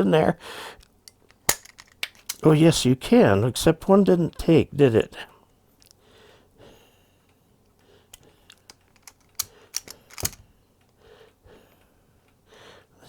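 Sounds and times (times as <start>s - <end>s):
wire stripper clicking: 8.5s - 10.4s.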